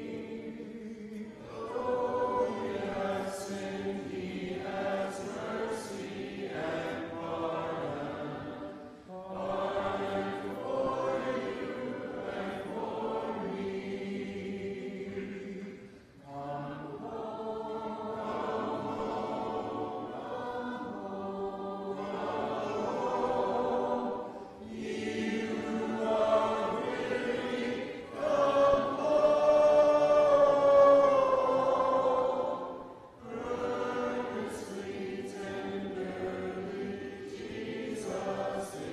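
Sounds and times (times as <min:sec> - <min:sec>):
congregation singing a hymn: 0:00.0 - 0:38.9
singers breathing: 0:08.7 - 0:09.1, 0:15.8 - 0:16.2.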